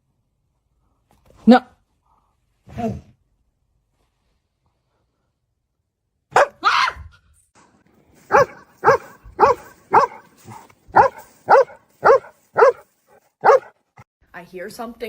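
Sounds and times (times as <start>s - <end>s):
dog barking: 6.3s - 6.6s, 8.3s - 13.7s.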